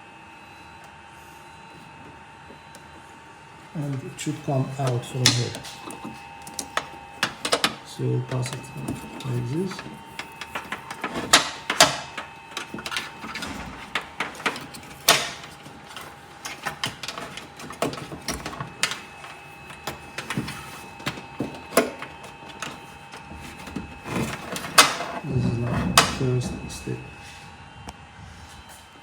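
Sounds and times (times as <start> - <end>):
faint steady hum: 0.0 - 29.0
cable and plastic trim clicking: 4.8 - 25.2.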